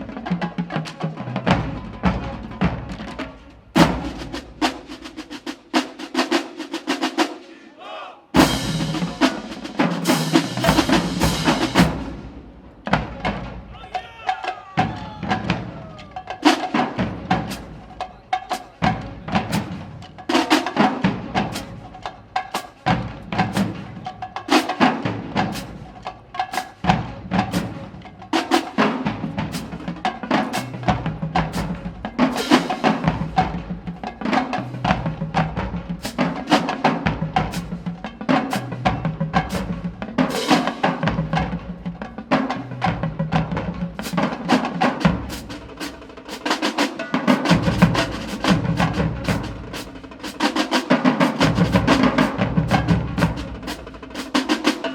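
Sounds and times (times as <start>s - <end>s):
snare and tenor drum strikes: 0.0s - 7.6s, 8.4s - 54.9s.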